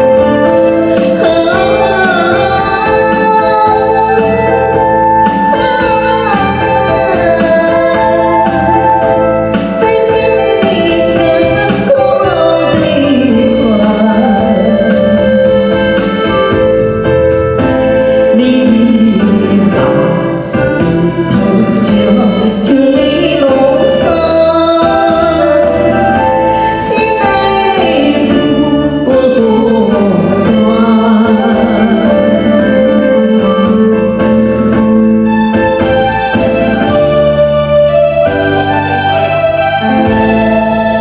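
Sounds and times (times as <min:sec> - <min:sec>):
instrumental accompaniment: 0:00.0 - 0:41.0.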